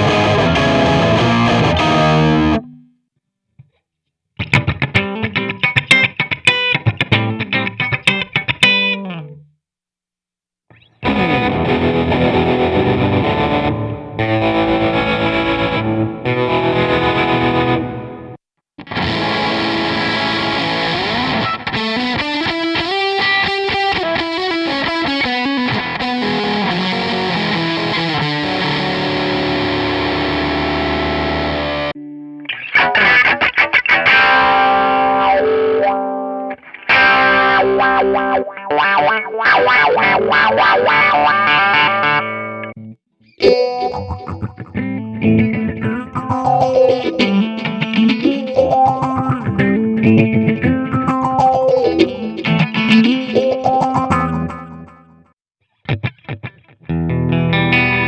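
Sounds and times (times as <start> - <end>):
distorted electric guitar: 0.0 - 2.9, 4.4 - 9.5, 10.7 - 55.2, 55.8 - 58.0
choppy picked guitar riffs: 0.0 - 3.0, 4.4 - 9.5, 10.7 - 55.2, 55.8 - 58.0
gliding held guitar notes: 43.4 - 54.8.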